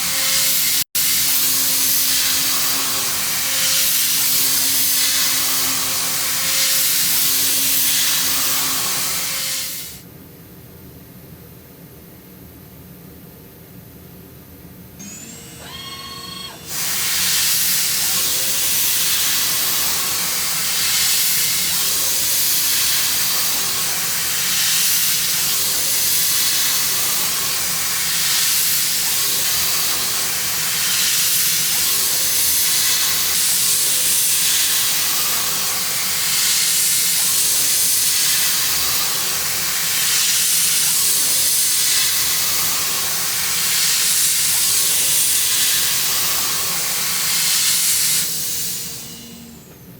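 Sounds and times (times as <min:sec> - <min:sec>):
milling machine cutting hiss: 0:00.0 - 0:10.0, 0:15.0 - 0:49.9
milling spindle whine: 0:15.0 - 0:49.9.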